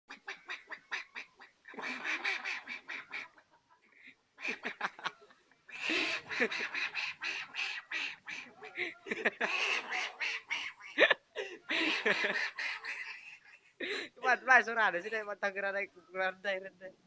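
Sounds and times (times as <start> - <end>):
duck-like quacking: 0.1 - 4.8, 5.7 - 11.1, 11.7 - 13.6.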